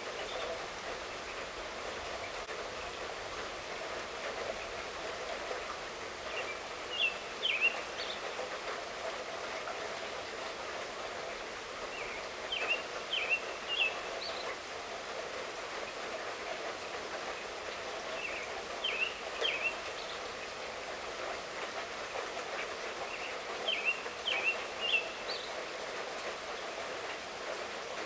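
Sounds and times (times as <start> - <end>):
light rainfall: 0.0 - 28.0
bird chirping: 6.4 - 8.2, 12.0 - 14.4, 18.2 - 20.2, 23.1 - 25.5.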